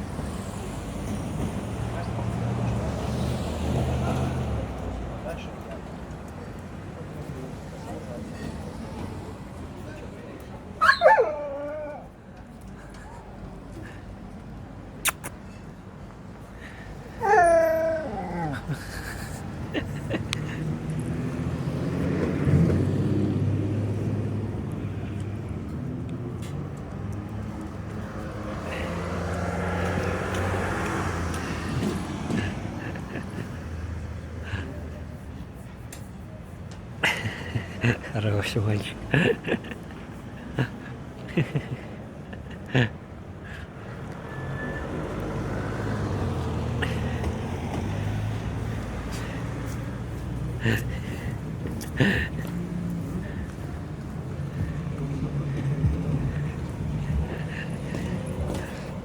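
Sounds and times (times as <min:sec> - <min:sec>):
traffic noise: 0:00.0 - 0:59.0
vehicle engine humming: 0:16.1 - 0:59.0.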